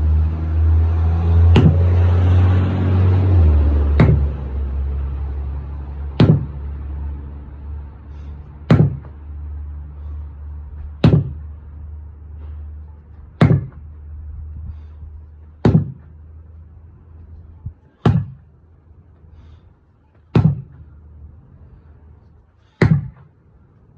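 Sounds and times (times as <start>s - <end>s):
low hum: 0.0s - 23.9s
sledgehammer striking a tire: 0.9s - 4.6s, 5.9s - 6.8s, 8.2s - 9.3s, 10.8s - 11.6s, 13.4s - 13.9s, 15.6s - 16.2s, 17.9s - 18.5s, 20.3s - 20.9s, 22.6s - 23.3s.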